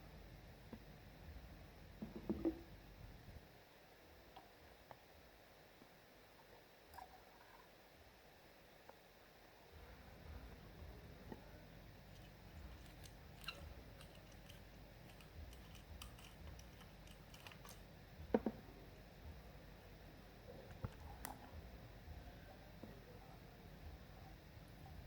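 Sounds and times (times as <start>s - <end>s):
small parts clicking and tapping: 12.1s - 18.5s.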